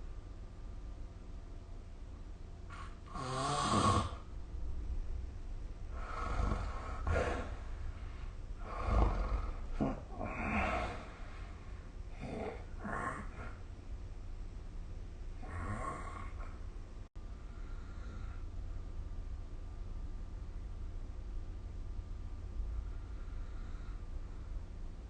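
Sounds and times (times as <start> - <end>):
steady low hum: 0.0 - 25.0
person snoring: 2.7 - 4.3, 5.9 - 7.8, 8.6 - 11.4, 12.1 - 13.7, 15.4 - 16.6.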